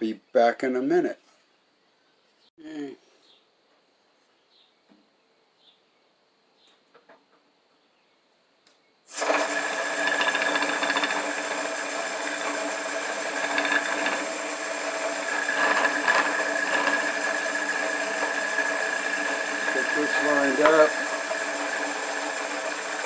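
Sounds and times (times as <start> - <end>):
motor humming and whining: 9.1 - 23.0.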